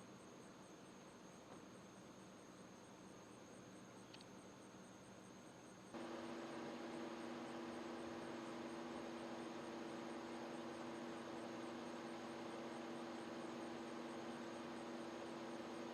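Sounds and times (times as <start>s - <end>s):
faint steady hum: 0.0s - 15.9s.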